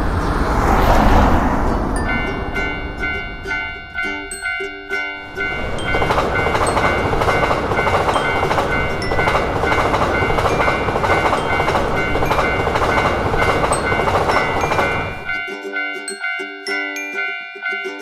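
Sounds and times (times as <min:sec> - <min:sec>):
train wheels rumbling on rails: 0:00.0 - 0:15.5
thin high ringing tones: 0:02.0 - 0:18.0.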